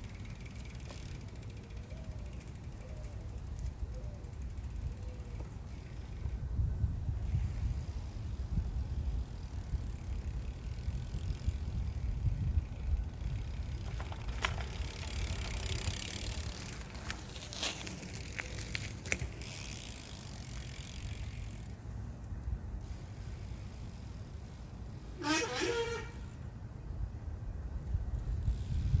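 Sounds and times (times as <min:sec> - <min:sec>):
bicycle hub ticking: 0:00.0 - 0:26.4, 0:27.8 - 0:29.0
wind rumble on microphone: 0:03.5 - 0:18.8, 0:26.8 - 0:29.0.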